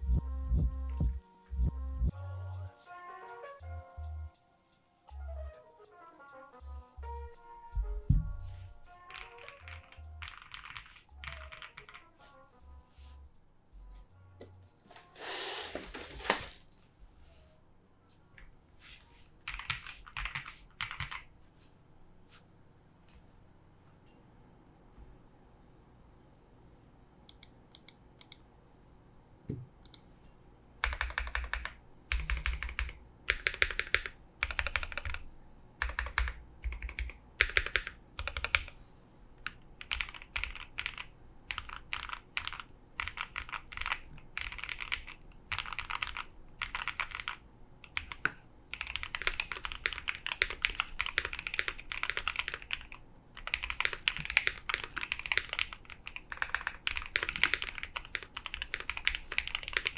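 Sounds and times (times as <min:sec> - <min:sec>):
mechanical keyboard typing: 0:09.1 - 0:12.0, 0:19.5 - 0:21.3, 0:27.3 - 0:28.4, 0:30.8 - 0:35.2, 0:35.8 - 0:38.7, 0:39.4 - 0:59.9.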